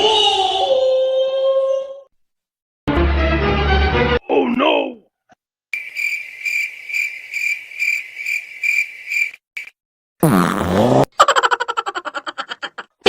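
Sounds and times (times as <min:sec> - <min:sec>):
cricket chirping: 0:05.8 - 0:09.7.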